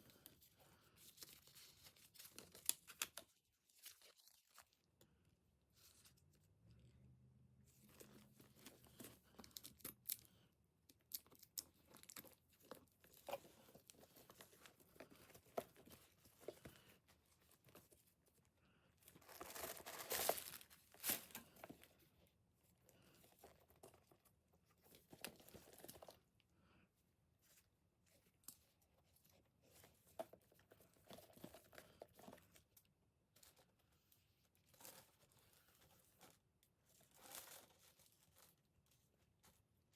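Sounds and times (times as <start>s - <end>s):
packaging rustling and crinkling: 19.1s - 21.9s.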